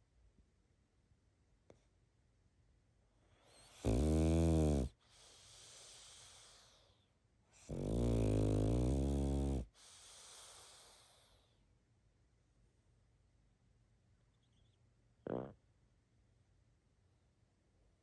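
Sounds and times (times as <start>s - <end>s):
dog snoring: 3.4s - 6.9s, 7.6s - 11.4s, 15.2s - 15.6s
breathy out-breath hiss: 5.0s - 7.0s, 9.7s - 11.4s.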